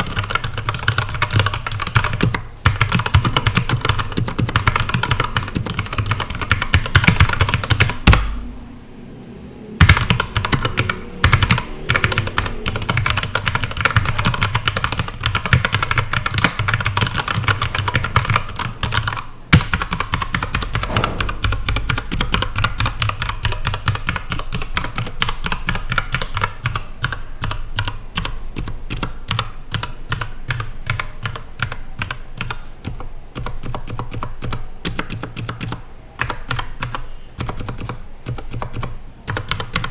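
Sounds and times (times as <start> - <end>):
mechanical keyboard typing: 0.0 - 8.3, 9.8 - 39.9.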